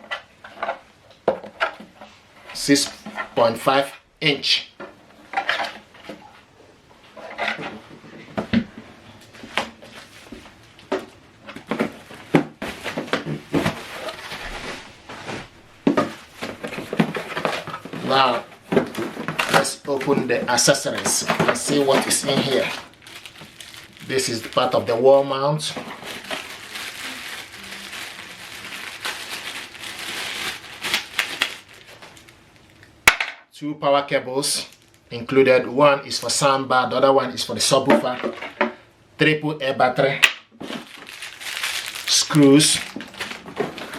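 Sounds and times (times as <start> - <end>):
packaging rustling: 7.1 - 25.0, 25.7 - 32.9, 40.6 - 43.9.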